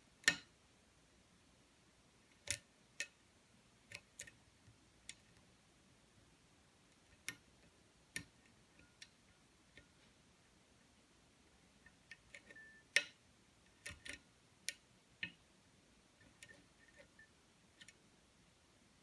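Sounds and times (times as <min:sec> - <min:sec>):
lock pick clicking pins: 0:03.9 - 0:04.4, 0:11.8 - 0:15.4.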